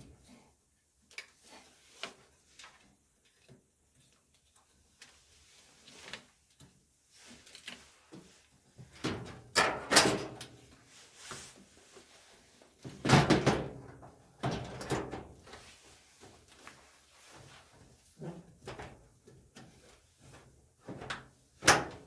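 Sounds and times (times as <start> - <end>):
hard parts knocking and clattering: 9.0 - 10.4.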